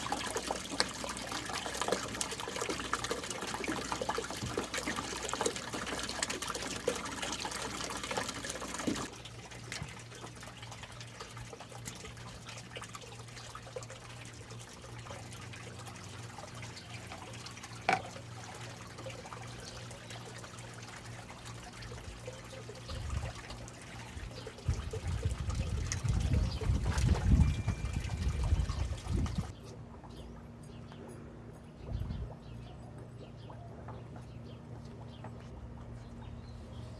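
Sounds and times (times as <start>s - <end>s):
water trickling: 0.0s - 29.6s.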